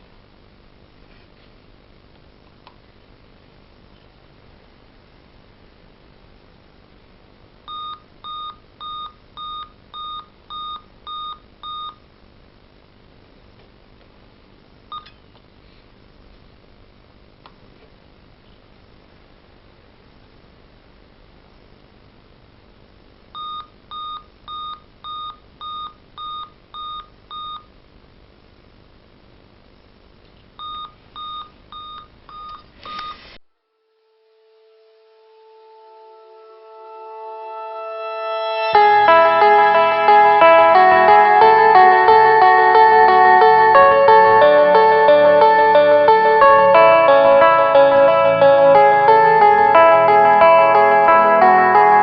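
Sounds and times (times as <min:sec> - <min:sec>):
laptop short beeps: 0:30.6 - 0:33.2.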